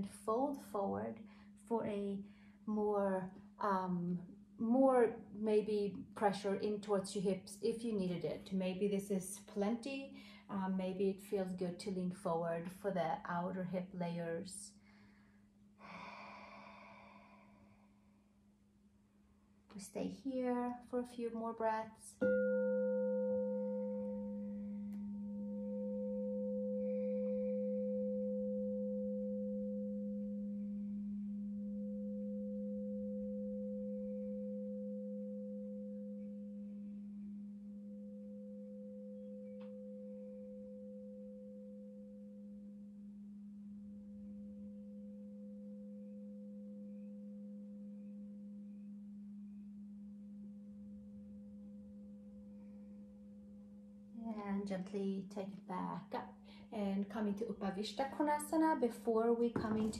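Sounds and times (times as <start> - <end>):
crystal singing bowl ringing: 22.2 - 54.1.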